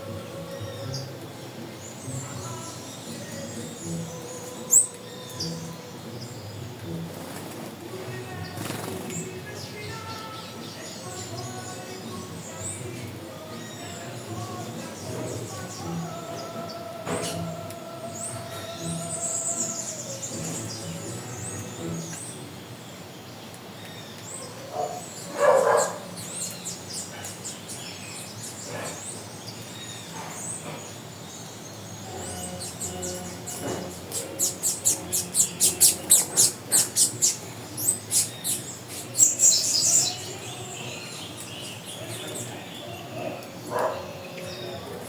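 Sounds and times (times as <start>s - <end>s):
rapid high bird chirps: 24.0s - 44.7s.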